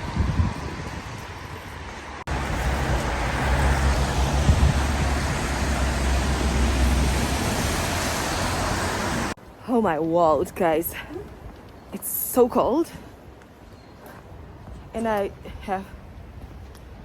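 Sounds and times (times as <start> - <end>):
vehicle rumble: 0.0 - 9.4.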